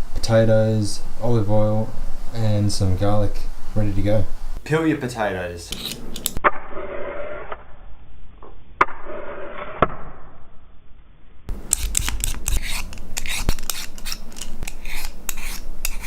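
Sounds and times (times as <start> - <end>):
potato peeler scraping: 5.7 - 6.4, 11.7 - 16.0.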